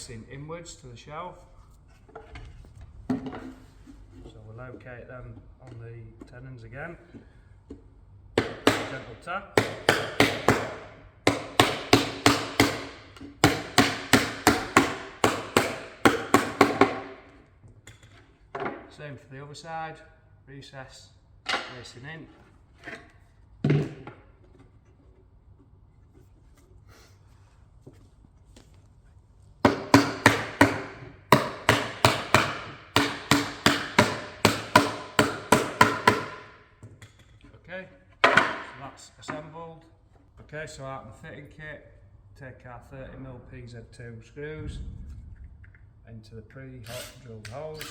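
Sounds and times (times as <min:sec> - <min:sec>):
rubber mallet knocking on plywood: 0:09.6 - 0:17.1, 0:29.6 - 0:36.5.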